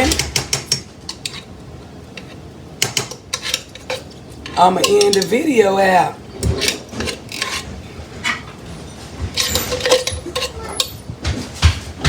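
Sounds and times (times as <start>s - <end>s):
utensil stirring in cooking pot: 0.0s - 8.6s, 9.2s - 11.1s.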